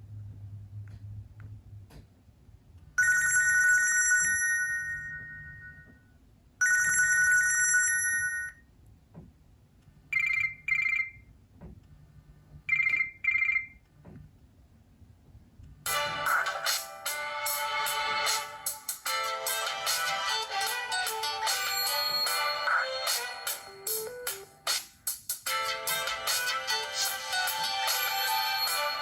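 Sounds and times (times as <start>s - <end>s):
phone ringtone rings: 3.0s - 6.0s, 6.6s - 8.6s, 10.1s - 11.2s, 12.7s - 13.8s, 19.1s - 24.7s, 25.5s - 29.0s.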